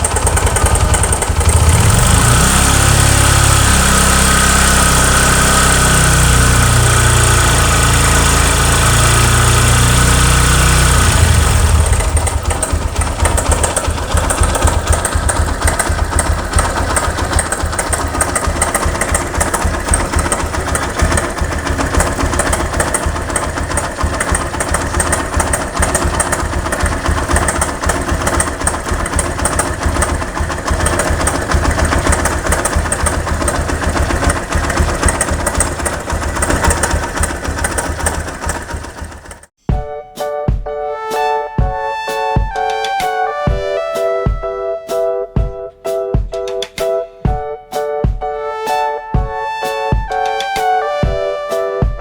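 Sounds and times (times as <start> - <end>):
motorcycle engine clattering: 0.0 - 39.6.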